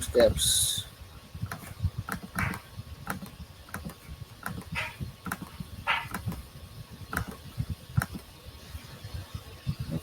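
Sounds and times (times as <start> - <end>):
mouse and keyboard clicking: 1.5 - 6.4, 7.1 - 7.4, 8.0 - 8.2.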